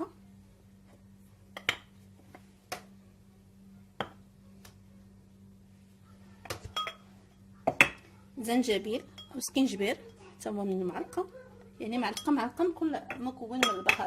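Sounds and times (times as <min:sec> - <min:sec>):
faint electrical hum: 0:00.0 - 0:14.0
spoon clinking on containers: 0:06.5 - 0:08.1, 0:08.9 - 0:10.1, 0:12.0 - 0:14.0.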